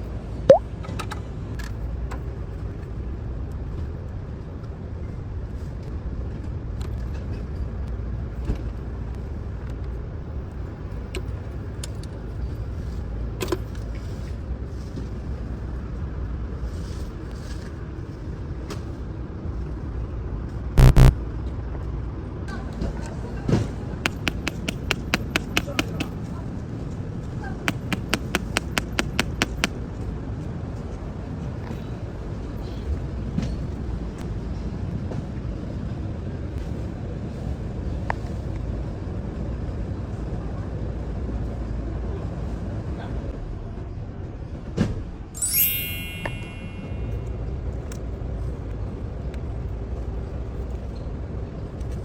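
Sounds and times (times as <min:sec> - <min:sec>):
clicks: 0:20.8 - 0:21.1, 0:24.1 - 0:26.1, 0:27.7 - 0:29.7
pitched double tone: 0:20.8 - 0:21.1, 0:45.4 - 0:47.2.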